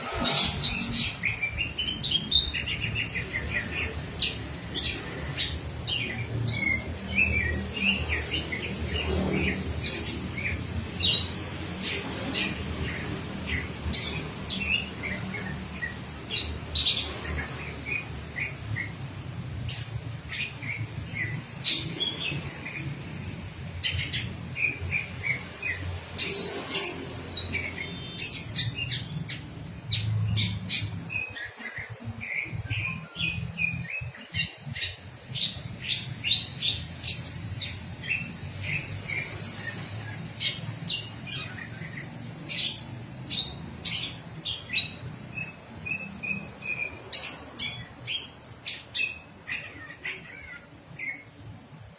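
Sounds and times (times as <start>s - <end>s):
songbirds chirping: 0.0s - 51.9s
bird squawks: 49.4s - 51.2s.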